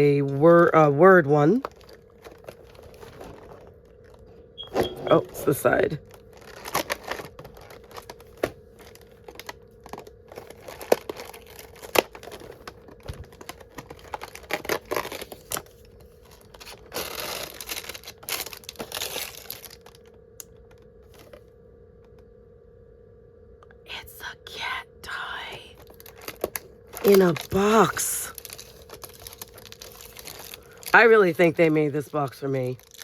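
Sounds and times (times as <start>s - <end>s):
cardboard tearing and crinkling: 1.5s - 4.2s, 5.4s - 20.0s, 26.0s - 33.0s.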